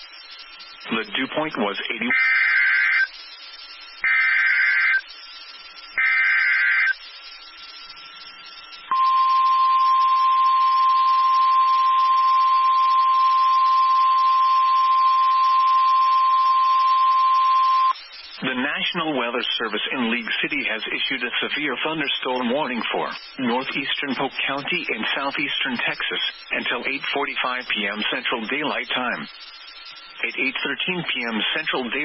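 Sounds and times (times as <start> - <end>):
steady warning alarm tone: 2.1 - 18.2.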